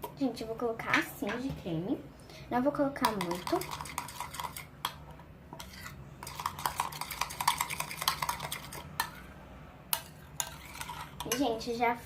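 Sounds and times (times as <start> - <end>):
utensil stirring slime in bowl: 2.9 - 9.3, 9.9 - 11.8.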